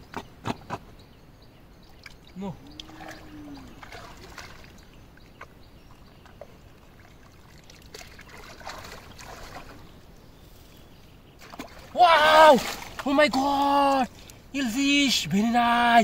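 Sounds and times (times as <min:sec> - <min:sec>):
water trickling and sloshing: 0:01.7 - 0:15.5
mud squelching: 0:02.0 - 0:10.0, 0:11.4 - 0:14.5.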